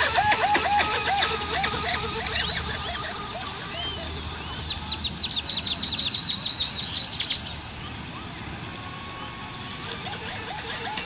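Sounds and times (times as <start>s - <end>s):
bird chirping rapidly: 0.0s - 8.0s
steady outdoor hiss: 0.0s - 11.0s.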